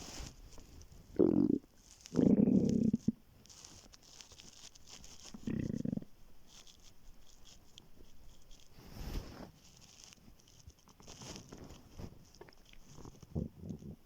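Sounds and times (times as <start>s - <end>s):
faint crackling: 0.0s - 14.0s
stomach growling: 1.1s - 3.3s, 5.2s - 6.2s, 12.4s - 14.0s.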